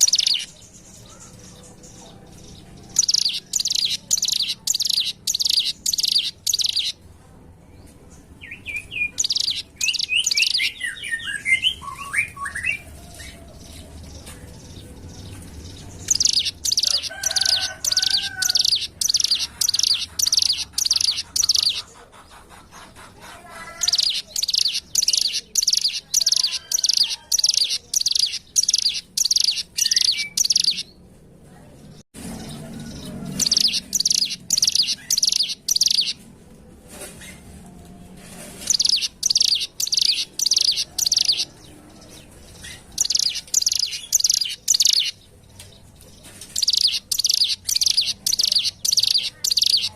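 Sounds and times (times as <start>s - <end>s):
bird singing rapid high notes: 0.0s - 0.5s, 3.0s - 7.0s, 16.0s - 21.8s, 23.9s - 30.9s, 33.4s - 36.2s, 38.7s - 41.5s, 43.0s - 45.2s, 46.6s - 49.9s.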